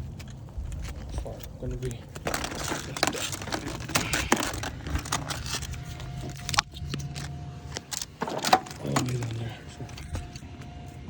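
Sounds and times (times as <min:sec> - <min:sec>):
crinkling rustles: 0:00.0 - 0:11.0
plastic clips clicking: 0:02.2 - 0:09.4.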